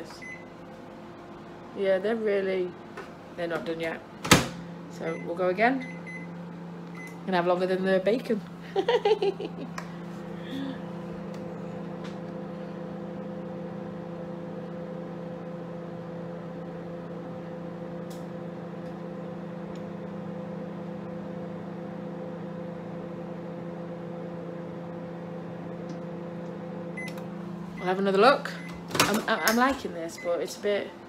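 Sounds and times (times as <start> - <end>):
microwave oven humming: 0.0 - 31.0
click: 18.0 - 19.0.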